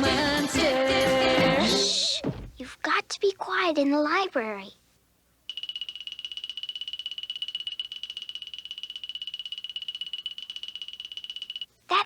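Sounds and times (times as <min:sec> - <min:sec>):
pulsing electronic alarm ring: 0:05.5 - 0:11.8.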